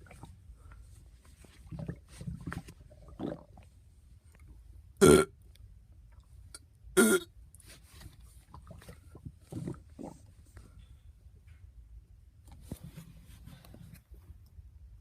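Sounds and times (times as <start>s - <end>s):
person burping: 5.0s - 5.3s, 7.0s - 7.3s.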